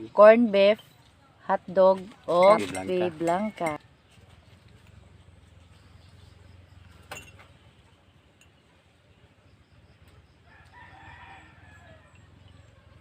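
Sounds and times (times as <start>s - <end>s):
rooster crowing: 10.4s - 12.6s.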